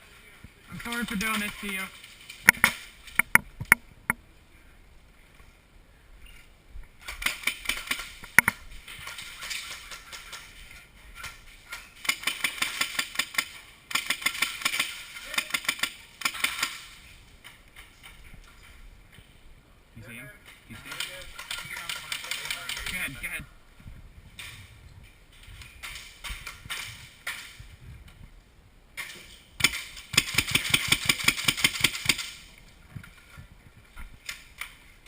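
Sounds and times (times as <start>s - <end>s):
airsoft guns firing: 7.0s - 10.5s, 12.0s - 17.0s, 29.0s - 32.5s.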